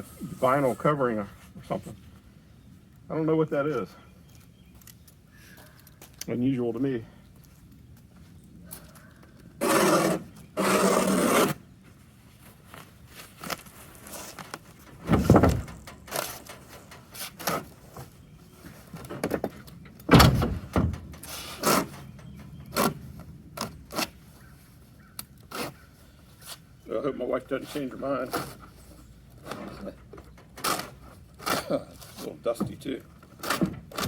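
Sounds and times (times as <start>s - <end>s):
wood scraping: 9.6s - 11.6s, 12.7s - 24.3s, 27.6s - 34.0s
wood knocking: 15.0s - 16.4s.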